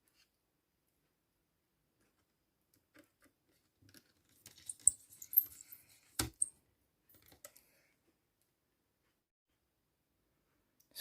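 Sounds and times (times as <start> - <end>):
laptop parts clicking and scraping: 3.9 - 6.5.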